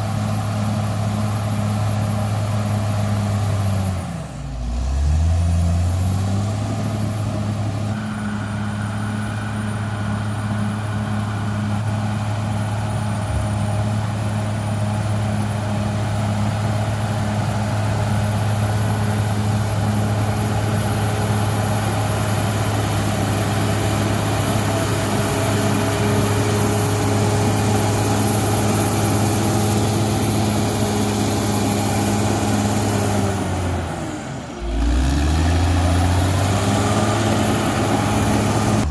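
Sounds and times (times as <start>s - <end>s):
bulldozer diesel engine running: 0.0s - 38.9s
thin high whine: 7.8s - 13.3s.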